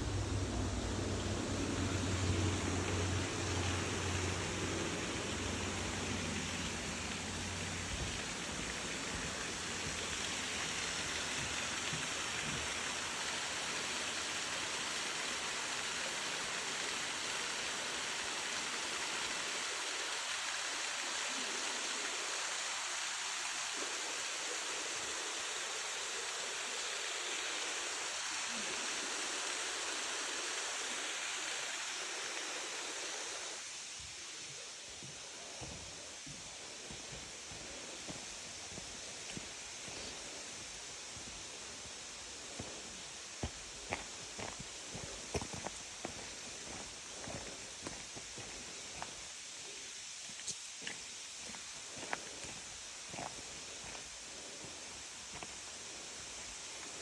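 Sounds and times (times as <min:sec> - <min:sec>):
low rumble: 0:00.0 - 0:06.2
waterfall rushing: 0:00.0 - 0:34.9.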